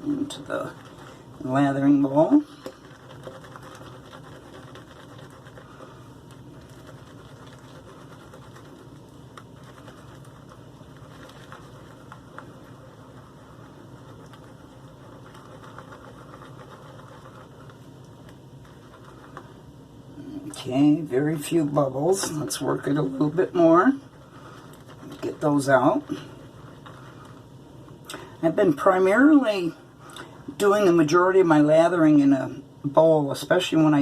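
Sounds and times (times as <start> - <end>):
shaving brush swishing lather: 0.0 - 19.7, 20.6 - 27.5.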